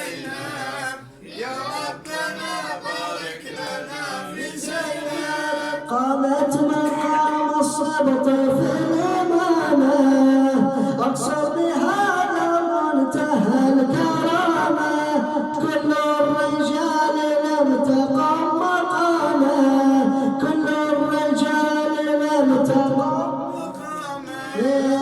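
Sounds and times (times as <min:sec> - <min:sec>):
man singing devotional chant: 0:00.0 - 0:25.0.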